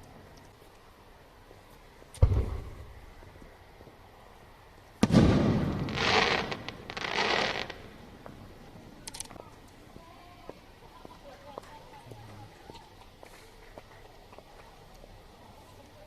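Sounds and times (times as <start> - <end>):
firework hissing crackle: 1.0 - 9.1
firework boom: 2.2 - 3.1, 5.0 - 6.9
firework sharp burst: 2.2 - 3.1, 5.0 - 8.0.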